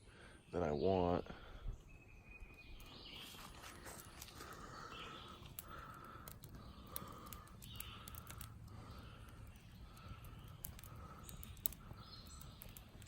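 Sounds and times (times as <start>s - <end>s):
light clicks: 5.4s - 13.0s.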